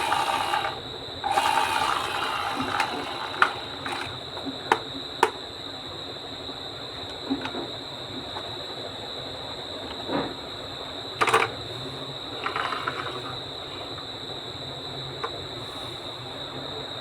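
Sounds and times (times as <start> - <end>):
marbles rolling on wooden track: 0.0 - 4.2, 12.3 - 13.4
faint high whine: 0.0 - 17.0.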